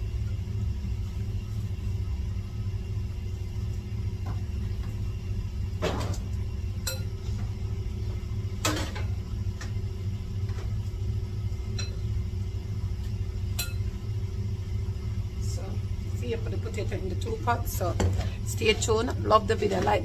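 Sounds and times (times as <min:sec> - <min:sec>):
steady low hum: 0:00.0 - 0:20.0
pots and metal utensils clinking: 0:06.8 - 0:07.2, 0:11.7 - 0:12.0, 0:13.6 - 0:13.9.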